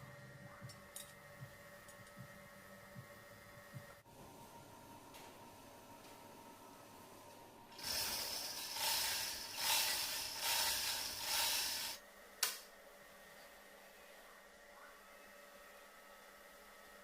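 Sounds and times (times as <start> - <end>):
sharp click: 12.4 - 12.7.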